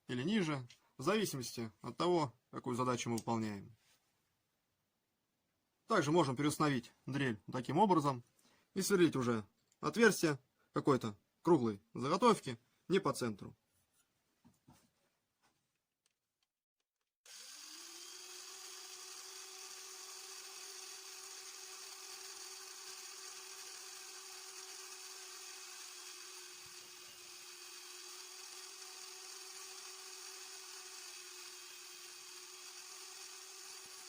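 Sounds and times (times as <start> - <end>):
electric drill whining: 17.2 - 34.0.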